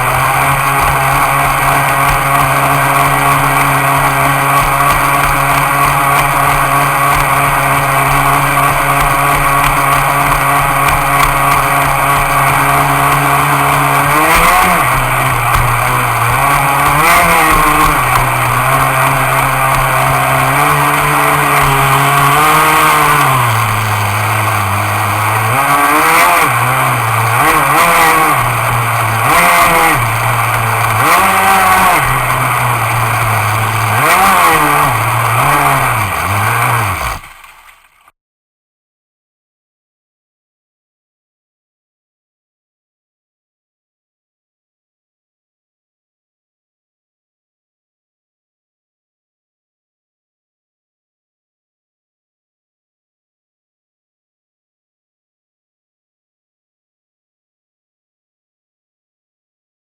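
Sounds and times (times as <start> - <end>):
model boat engine revving: 0.0 - 37.7.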